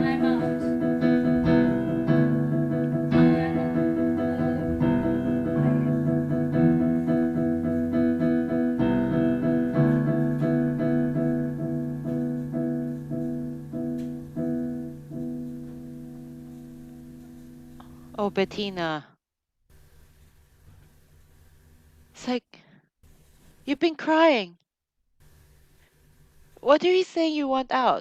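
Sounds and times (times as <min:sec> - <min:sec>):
piano playing sustained chords: 0:00.0 - 0:18.6.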